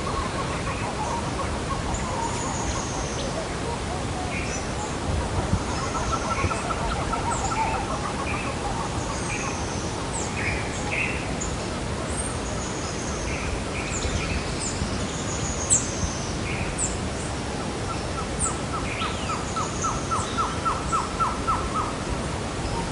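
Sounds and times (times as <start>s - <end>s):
birds chirping and calling: 0.0s - 11.2s.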